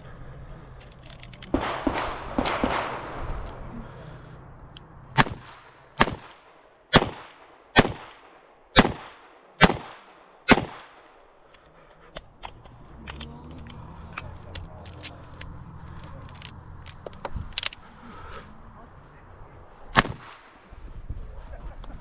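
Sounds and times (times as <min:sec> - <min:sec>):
light clicks and rattles: 0:00.0 - 0:03.7, 0:11.2 - 0:18.4
revolver gunshots with echo: 0:01.5 - 0:03.8, 0:05.2 - 0:11.1, 0:19.9 - 0:20.6.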